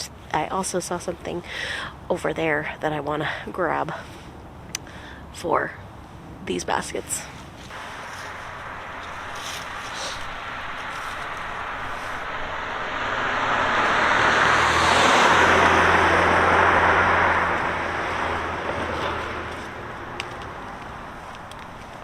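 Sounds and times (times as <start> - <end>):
car driving past: 7.7 - 21.3.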